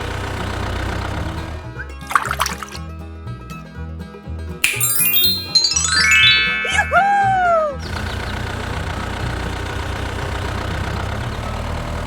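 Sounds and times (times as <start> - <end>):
falling whistle sound effect: 4.6 - 7.7.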